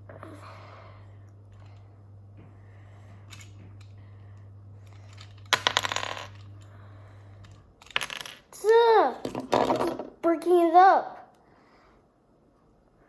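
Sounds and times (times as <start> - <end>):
steady low hum: 0.0 - 9.5
toy pieces clattering: 4.8 - 6.6, 7.4 - 10.2
plastic toy pieces clicking: 7.4 - 8.4.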